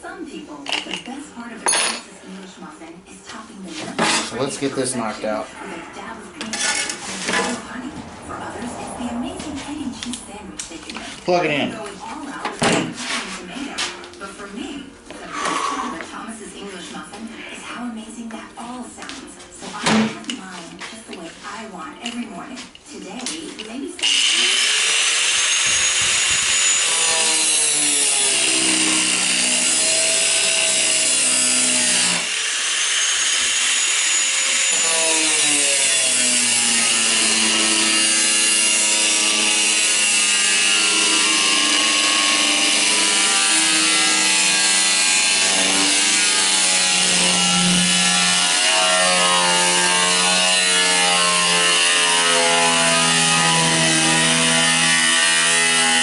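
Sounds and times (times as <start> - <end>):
power tool cutting sheet metal: 3.9 - 10.4, 23.7 - 56.0.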